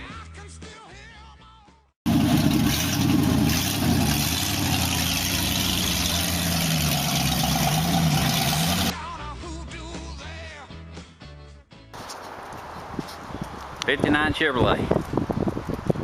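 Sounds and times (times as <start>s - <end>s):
loud car engine running: 2.1s - 8.9s.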